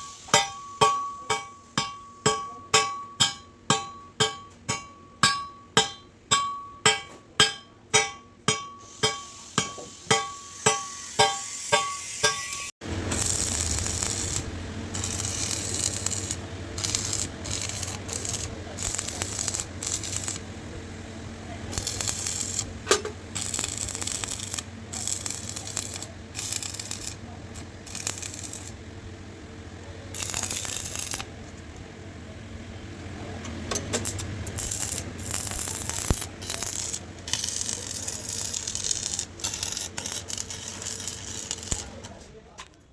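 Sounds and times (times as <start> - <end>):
hissing scraping metalwork bursts: 8.8 - 20.7, 21.5 - 29.0, 29.8 - 31.4, 33.8 - 42.2
steady low hum: 12.8 - 42.6.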